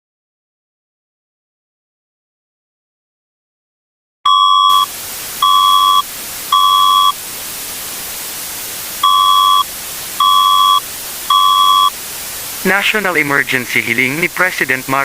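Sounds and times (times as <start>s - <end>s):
two-pitch electronic beeps: 4.3s - 7.2s, 9.0s - 11.9s
static hiss: 4.3s - 15.0s.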